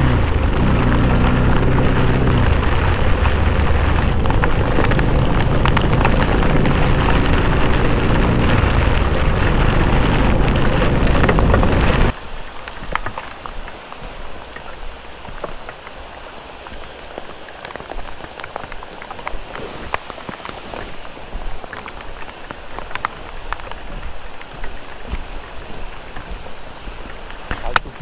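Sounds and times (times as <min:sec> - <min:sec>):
vehicle engine running: 0:00.0 - 0:12.1
rain: 0:00.0 - 0:28.0
wind: 0:00.0 - 0:28.0.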